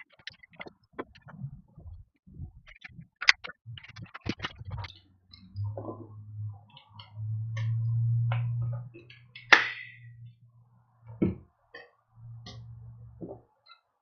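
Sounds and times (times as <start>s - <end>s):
low hum: 0.0s - 13.5s.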